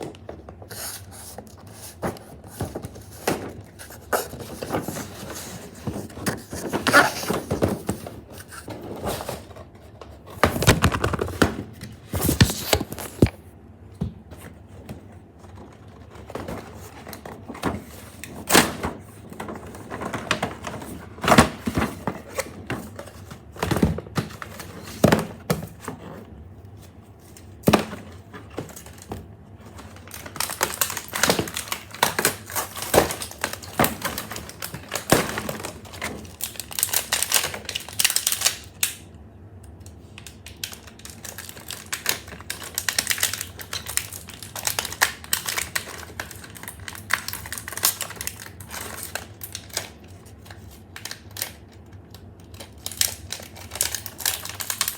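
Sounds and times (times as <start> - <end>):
packaging crackling and crinkling: 0.0 - 13.4, 14.3 - 26.0, 26.8 - 39.1, 39.8 - 54.9
packaging clicks and knocks: 1.3 - 13.4, 27.6 - 39.0, 40.2 - 51.6, 52.4 - 54.9.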